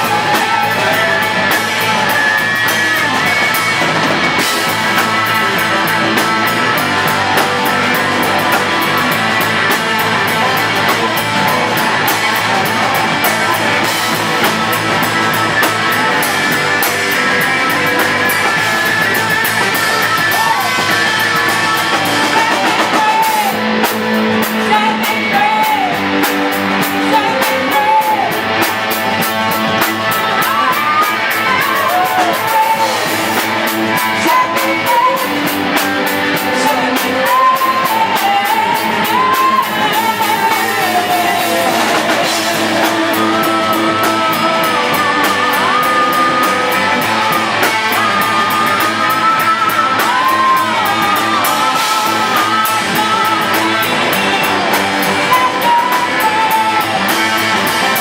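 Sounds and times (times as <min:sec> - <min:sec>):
drum kit with cymbals: 0:00.0 - 0:58.0
electric guitar: 0:00.0 - 0:58.0.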